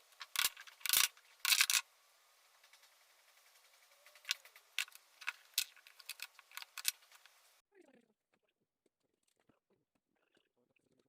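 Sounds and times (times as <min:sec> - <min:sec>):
metal parts and tools clattering: 0:00.0 - 0:01.8, 0:04.3 - 0:07.4.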